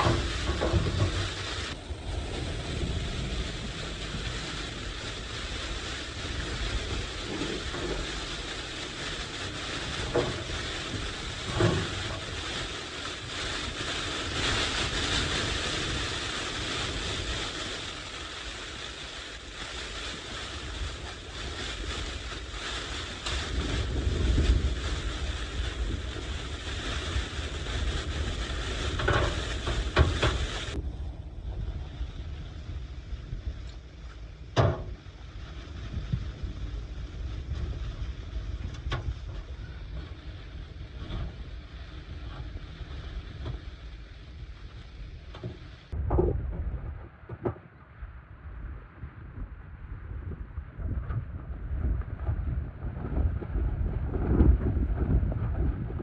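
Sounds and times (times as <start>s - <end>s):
wind buffeting microphone: 0.0s - 56.0s.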